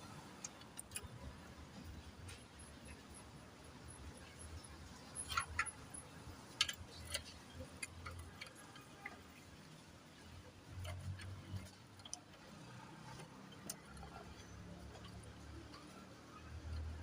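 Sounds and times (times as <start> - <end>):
metal engine parts handled: 4.8 - 17.0
hand tools clicking and tapping: 5.1 - 17.0.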